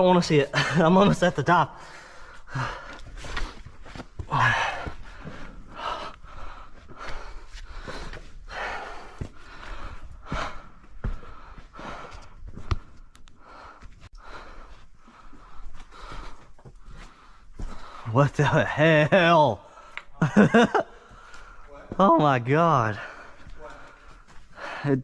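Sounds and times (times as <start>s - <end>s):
person breathing hard: 1.7s - 18.2s, 20.9s - 21.9s, 23.0s - 25.0s.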